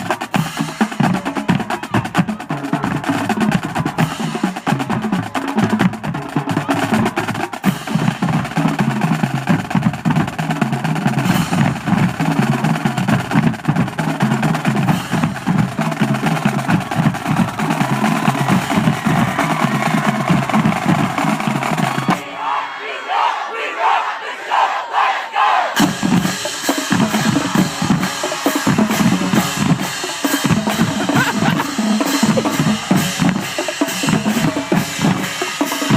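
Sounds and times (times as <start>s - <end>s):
marching drumline playing: 0.0s - 22.2s, 25.6s - 35.9s
crowd shouting: 16.1s - 35.8s.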